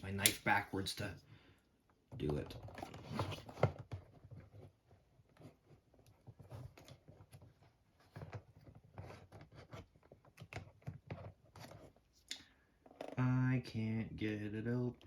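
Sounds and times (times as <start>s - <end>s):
cardboard rustling: 2.2s - 12.2s.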